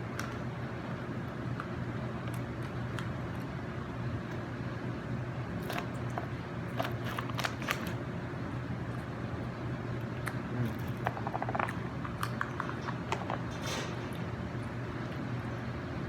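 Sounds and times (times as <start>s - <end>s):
crisp eating crunches: 5.5s - 8.1s, 9.9s - 15.6s.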